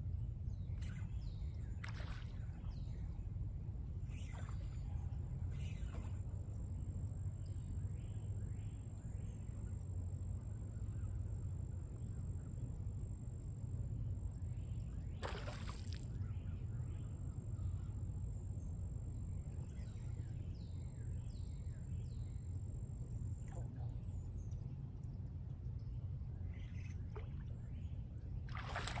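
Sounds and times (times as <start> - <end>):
faint bird chirps: 4.0 - 12.6, 14.3 - 22.6, 25.8 - 29.0.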